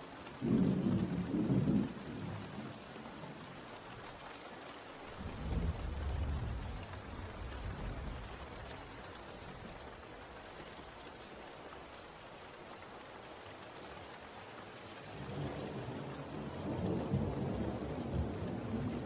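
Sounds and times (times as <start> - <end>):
steady rain falling: 0.0 - 19.0
low thunder rumble: 5.2 - 8.7.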